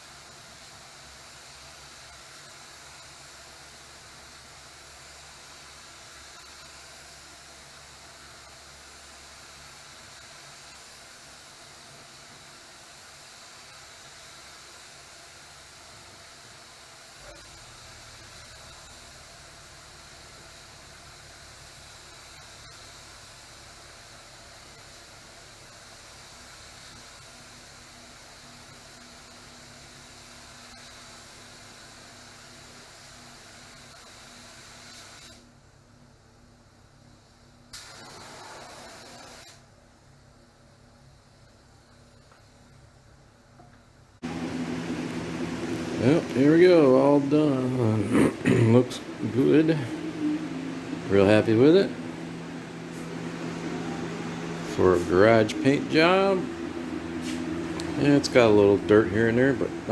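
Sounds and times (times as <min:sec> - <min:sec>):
compressed air hissing: 0:37.8 - 0:39.4, 0:44.2 - 0:59.9
low hum: 0:44.2 - 0:59.9.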